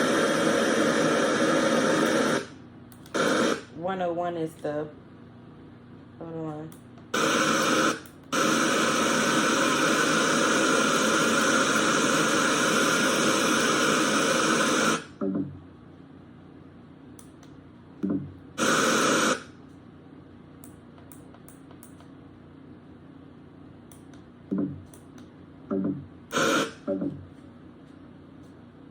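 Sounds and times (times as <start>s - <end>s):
radio static hiss: 0.0s - 2.6s, 3.2s - 3.8s, 7.2s - 15.2s, 18.6s - 19.5s, 26.3s - 27.0s.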